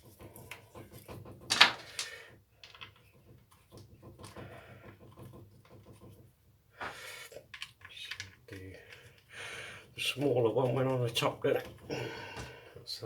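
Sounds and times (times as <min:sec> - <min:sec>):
small parts clicking and rustling: 0:00.0 - 0:09.3.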